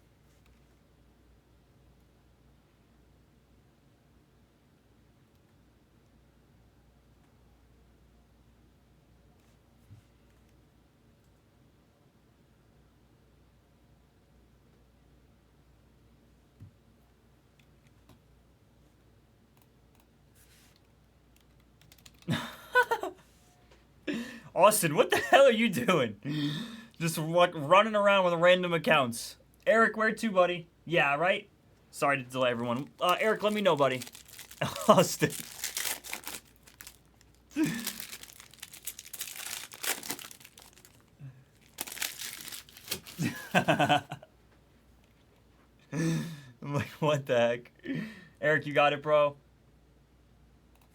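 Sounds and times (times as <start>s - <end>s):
plastic packaging crinkling: 32.5s - 43.8s.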